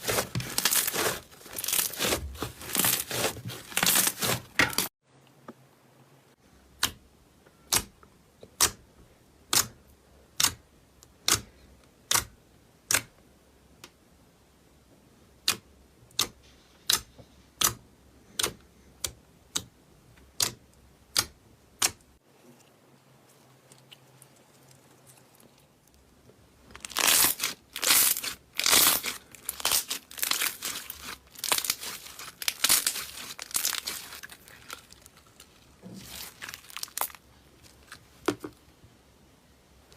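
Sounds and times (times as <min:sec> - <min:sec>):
slime crackling and crunching: 0:00.0 - 0:04.9, 0:26.7 - 0:38.0
slime popping: 0:26.8 - 0:37.2.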